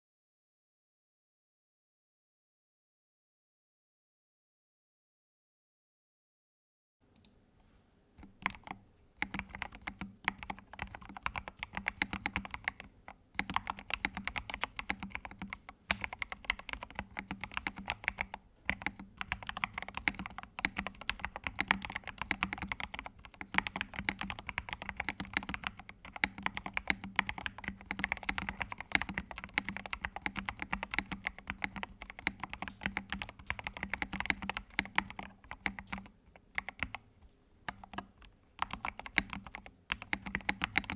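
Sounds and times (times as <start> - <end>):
fast typing on keyboard: 8.2 - 37.0, 37.7 - 40.9.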